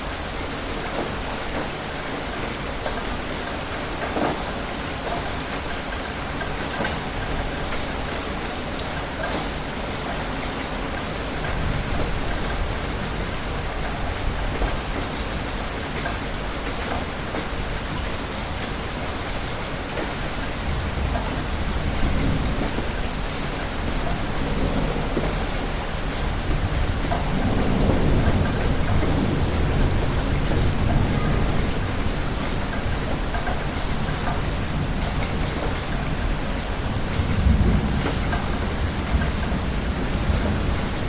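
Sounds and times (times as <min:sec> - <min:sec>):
steady rain: 0:00.0 - 0:41.0
rolling thunder: 0:20.3 - 0:41.0.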